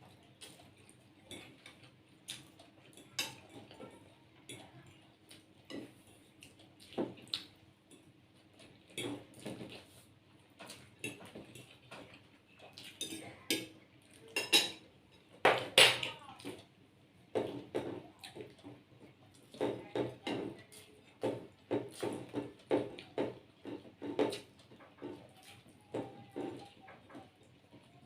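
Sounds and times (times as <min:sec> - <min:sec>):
cutlery clinking on plates: 0:01.3 - 0:04.6, 0:10.6 - 0:16.1, 0:21.3 - 0:27.8.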